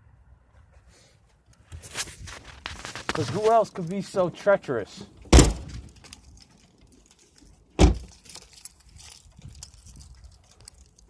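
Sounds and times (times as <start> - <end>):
heavy thumps: 5.3 - 5.8
light clicking and jingling: 5.7 - 11.0.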